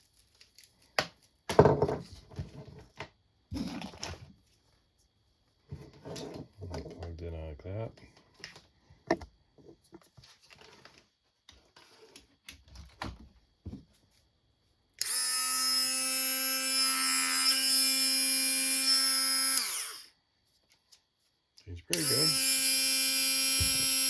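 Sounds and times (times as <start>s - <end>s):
rotary tool high-pitched whine: 15.0s - 20.2s, 21.9s - 24.0s.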